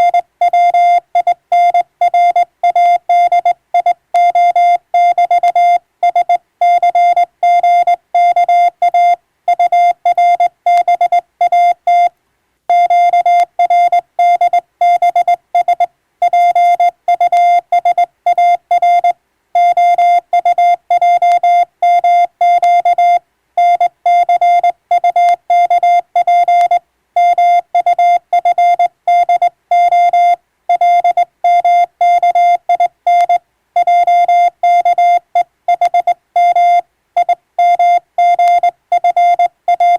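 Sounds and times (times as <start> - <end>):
morse code beeps: 0.0 - 12.1, 12.7 - 39.9.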